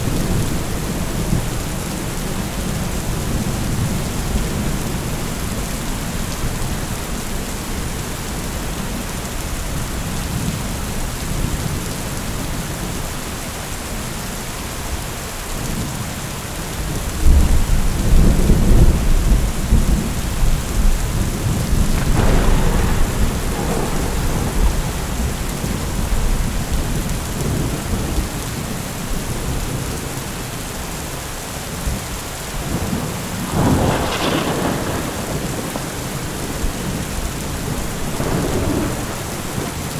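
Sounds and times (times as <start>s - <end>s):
heavy rain falling: 0.0s - 39.9s
low thunder rumble: 16.9s - 30.5s, 31.8s - 39.9s
sharp thunderclap: 17.2s - 28.4s, 32.7s - 39.9s.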